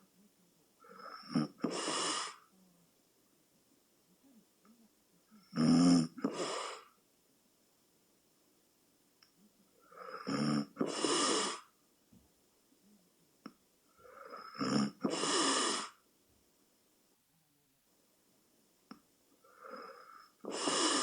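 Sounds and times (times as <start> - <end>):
person snoring: 0.8 - 2.5, 5.4 - 6.9, 9.8 - 11.7, 14.0 - 16.0, 19.4 - 21.0.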